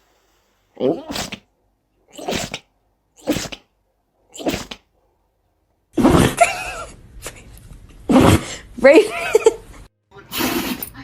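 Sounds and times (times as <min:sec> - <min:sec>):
dog sneezing: 0:01.0 - 0:01.5, 0:02.1 - 0:03.7, 0:04.3 - 0:04.9.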